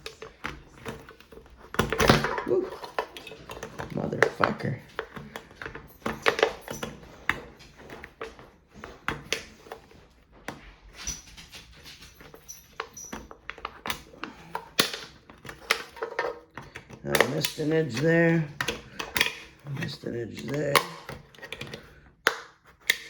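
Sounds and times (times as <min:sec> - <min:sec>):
can opener cutting can lid: 0:00.0 - 0:09.9, 0:12.8 - 0:23.0.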